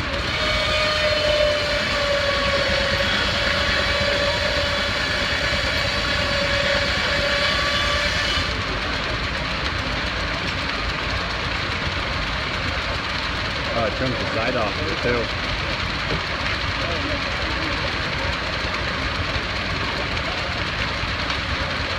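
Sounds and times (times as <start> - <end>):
steam whistle blowing: 0.0 - 8.7
machinery rumbling: 0.0 - 21.9.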